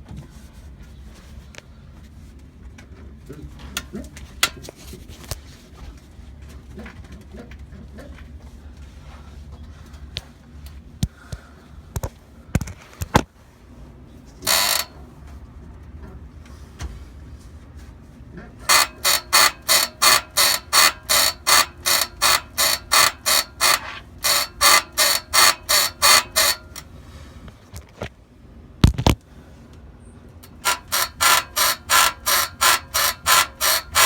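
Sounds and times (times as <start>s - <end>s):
suspension bushing squeaking: 14.4s - 15.0s, 18.7s - 26.8s, 30.4s - 34.0s
scattered clicks: 30.4s - 34.0s.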